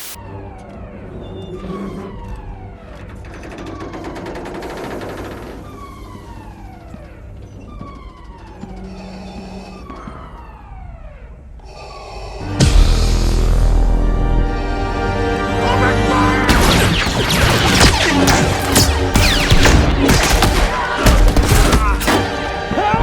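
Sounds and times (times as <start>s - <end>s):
sci-fi blaster shots: 16.5s - 22.7s.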